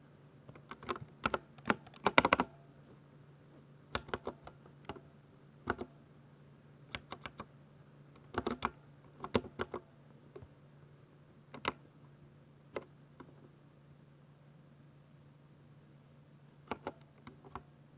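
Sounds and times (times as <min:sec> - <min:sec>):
mechanical keyboard typing: 0:00.7 - 0:02.5.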